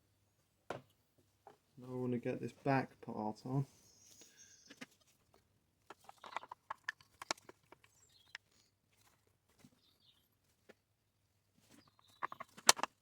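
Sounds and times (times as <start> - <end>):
faint clicks of parts handled: 4.1 - 9.8, 11.6 - 13.0.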